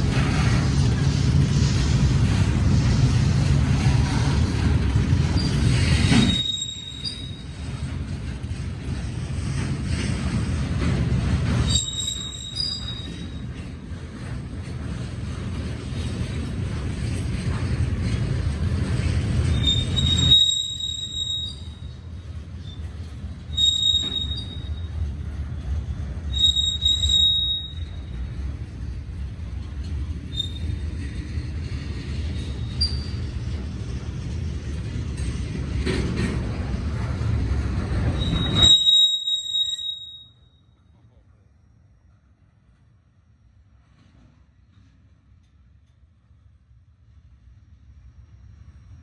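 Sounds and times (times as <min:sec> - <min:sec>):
freight train rumble: 0:00.0 - 0:49.0
steel wheel squeal: 0:05.2 - 0:07.6, 0:11.6 - 0:13.5, 0:19.4 - 0:25.0, 0:26.3 - 0:28.1, 0:30.3 - 0:31.1, 0:32.3 - 0:33.4, 0:38.0 - 0:40.7.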